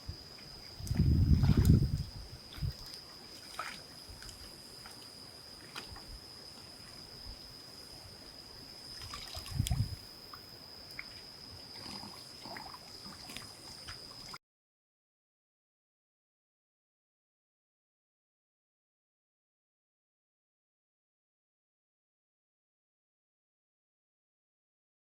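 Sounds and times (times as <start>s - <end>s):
faint water trickling: 0.0s - 14.4s.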